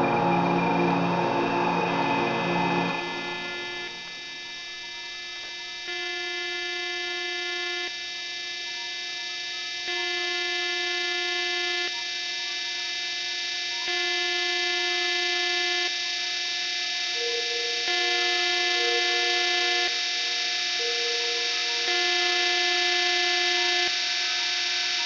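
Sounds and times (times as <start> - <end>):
electronic drone music: 0.0 - 5.2, 16.8 - 25.0.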